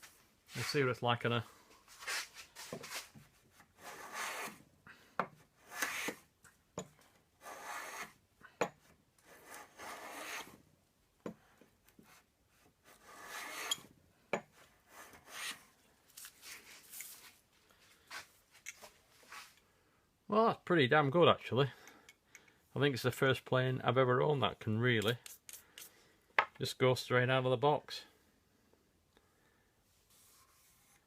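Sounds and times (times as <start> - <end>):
hand plane rasping across wood: 3.8 - 4.6, 5.6 - 6.2, 7.4 - 8.1, 9.2 - 10.5, 12.9 - 13.8, 14.9 - 15.6.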